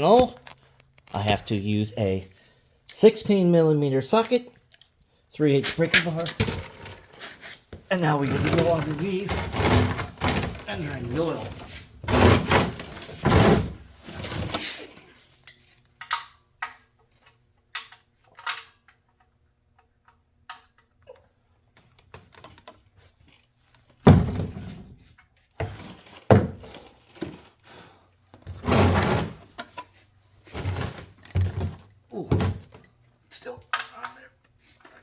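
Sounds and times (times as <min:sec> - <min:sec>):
thuds and scraping under car: 0:05.6 - 0:14.8, 0:23.9 - 0:27.6
metal clinks of socket and bar: 0:16.0 - 0:19.0.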